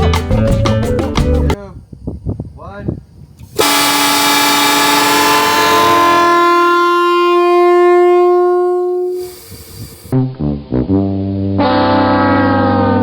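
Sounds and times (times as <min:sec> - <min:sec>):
train air horn blasting: 0:03.6 - 0:10.1, 0:11.6 - 0:12.9.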